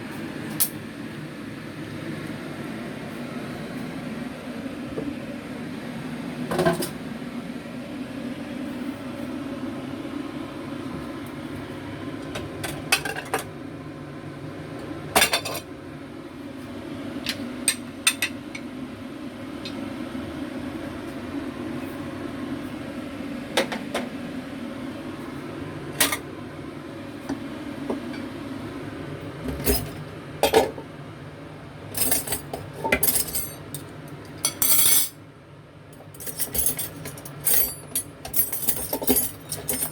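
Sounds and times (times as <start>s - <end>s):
utensils and dishes clinking: 12.7s - 13.5s, 15.2s - 15.7s, 29.5s - 30.8s, 32.0s - 35.2s, 36.0s - 39.9s.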